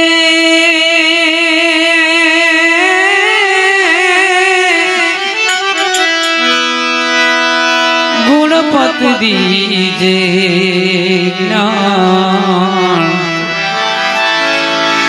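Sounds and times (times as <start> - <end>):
melody instrument playing: 5.5 - 7.0.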